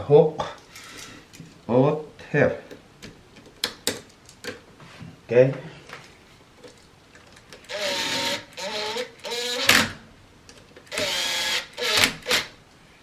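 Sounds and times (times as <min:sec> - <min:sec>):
cordless drill driving screws: 0:07.6 - 0:10.0, 0:10.9 - 0:12.5.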